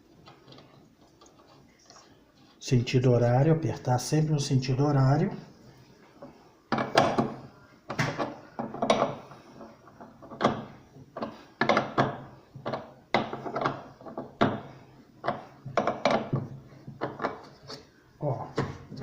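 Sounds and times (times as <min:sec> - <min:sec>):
knocks and clunks on pulley: 0:06.7 - 0:17.5.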